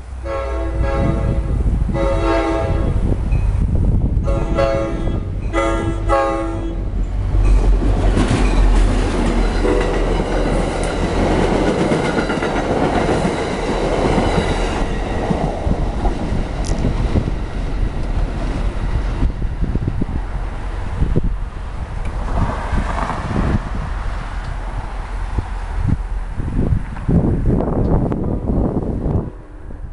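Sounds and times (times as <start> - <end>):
train rumble and wheel clatter: 0.0 - 29.9
train horn: 0.2 - 3.1, 4.2 - 6.9, 9.6 - 10.3.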